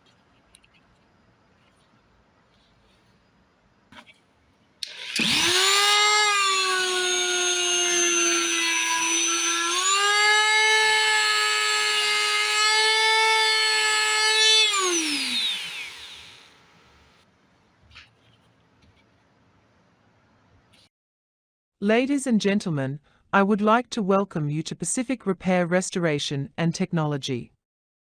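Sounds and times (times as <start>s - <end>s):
power tool motor running: 4.8s - 16.5s.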